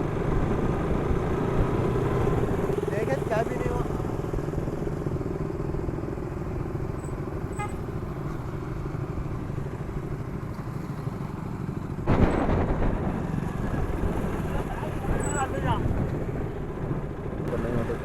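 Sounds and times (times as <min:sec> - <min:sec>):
motorcycle engine running: 0:00.0 - 0:18.0
road noise: 0:00.0 - 0:18.0
wind noise: 0:12.0 - 0:17.6.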